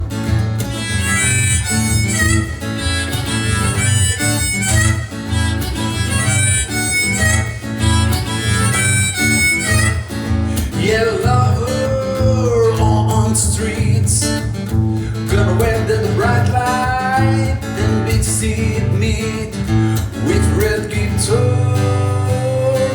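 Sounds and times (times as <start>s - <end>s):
acoustic guitar strumming: 0.0s - 22.9s
melodic line with bending notes: 0.7s - 10.2s.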